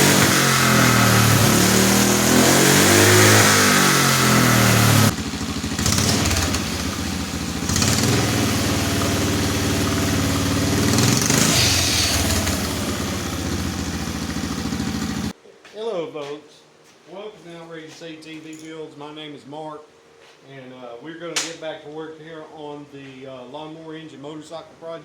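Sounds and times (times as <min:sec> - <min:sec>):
loud rushing hiss: 0:00.0 - 0:15.3
small motorcycle engine revving: 0:00.0 - 0:15.3.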